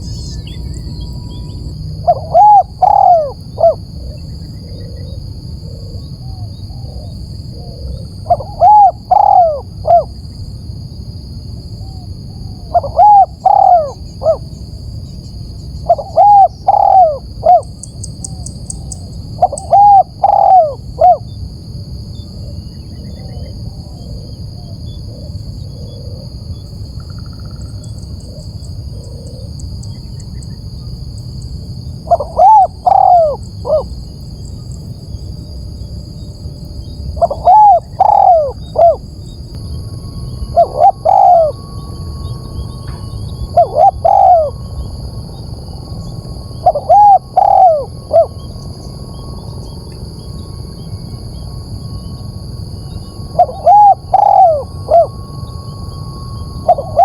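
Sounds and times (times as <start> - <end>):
dove cooing: 0.0 - 10.1, 12.4 - 14.5, 15.8 - 21.3, 32.0 - 34.0, 37.2 - 39.0, 39.8 - 50.5, 52.8 - 57.0.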